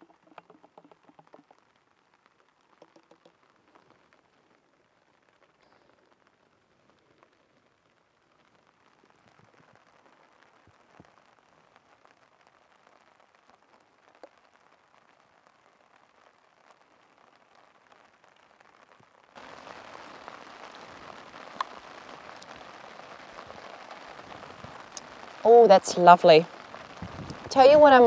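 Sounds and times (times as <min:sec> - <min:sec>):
drops ticking on a surface: 0:00.0 - 0:01.9, 0:02.6 - 0:04.0
steady rain falling: 0:00.0 - 0:28.0.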